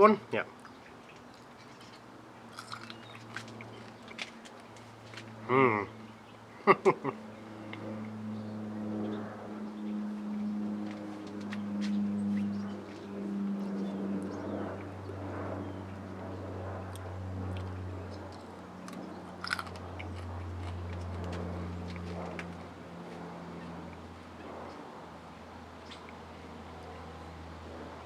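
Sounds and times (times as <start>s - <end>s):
steady low hum: 0.0s - 28.0s
person chewing crunchy peppers: 2.5s - 4.4s, 18.3s - 22.6s.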